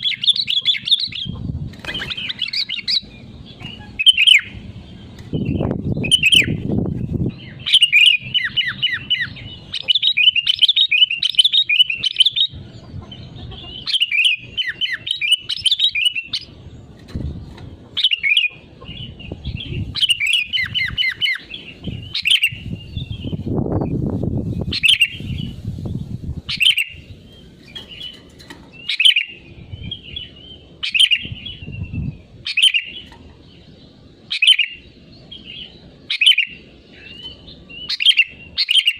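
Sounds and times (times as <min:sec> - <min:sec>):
bird chirping and chattering: 0:00.0 - 0:38.9
low rumbling noise: 0:00.4 - 0:10.6, 0:12.0 - 0:38.6.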